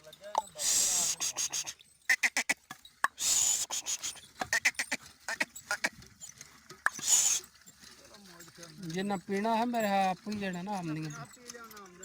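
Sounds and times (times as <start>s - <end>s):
short hissing bursts: 0.6s - 1.8s, 3.2s - 4.2s, 6.9s - 7.4s.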